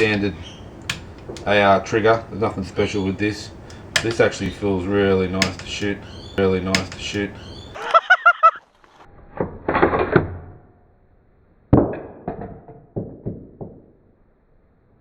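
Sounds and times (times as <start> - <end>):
rifle mechanism clicks and clunks: 0.0 - 7.8.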